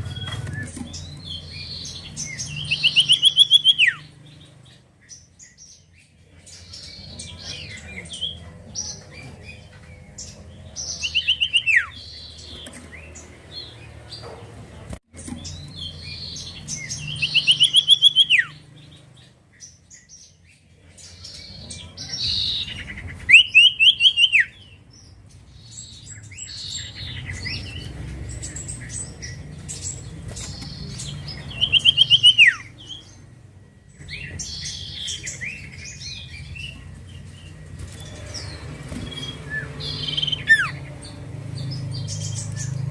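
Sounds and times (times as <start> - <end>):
bird singing rapid phrases: 0.0 - 42.9
soft bird chirps and whistles: 15.3 - 18.6, 21.1 - 24.7, 28.6 - 36.8.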